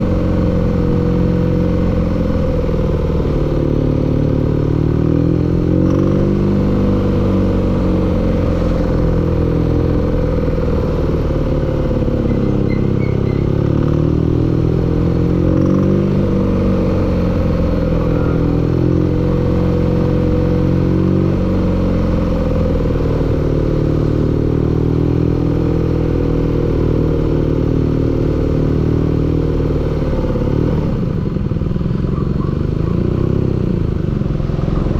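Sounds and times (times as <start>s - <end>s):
engine running with knocking clatter: 0.0s - 34.9s.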